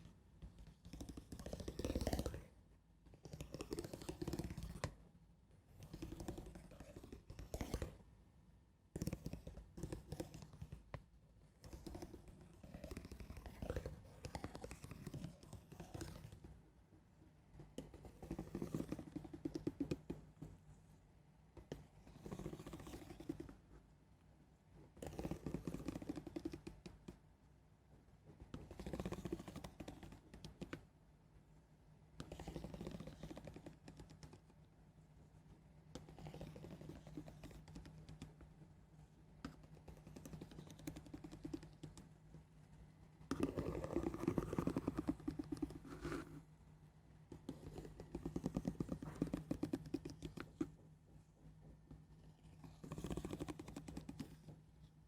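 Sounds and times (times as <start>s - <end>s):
soft grainy scratching strokes: 0.0s - 2.6s, 3.2s - 5.0s, 5.7s - 8.1s, 9.0s - 27.3s, 28.2s - 30.9s, 31.5s - 55.0s.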